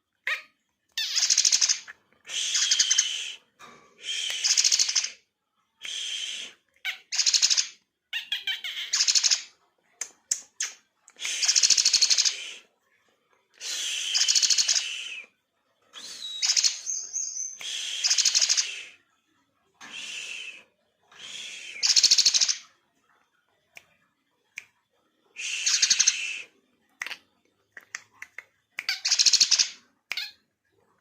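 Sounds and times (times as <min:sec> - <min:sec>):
bird harsh chattering song: 0:01.0 - 0:03.3, 0:04.3 - 0:05.2, 0:06.9 - 0:09.5, 0:10.4 - 0:12.5, 0:14.1 - 0:15.0, 0:16.0 - 0:18.9, 0:21.7 - 0:22.7, 0:25.4 - 0:27.2, 0:28.8 - 0:30.4
thin bird whistle: 0:02.3 - 0:03.4, 0:05.8 - 0:06.6, 0:13.6 - 0:15.3, 0:16.0 - 0:19.0, 0:19.8 - 0:22.5, 0:25.4 - 0:26.5.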